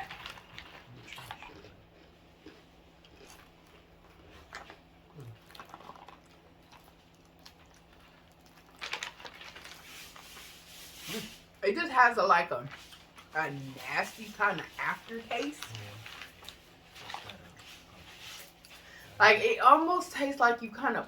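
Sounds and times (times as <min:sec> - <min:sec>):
chewing crisp food: 0:00.0 - 0:11.1, 0:14.6 - 0:19.0.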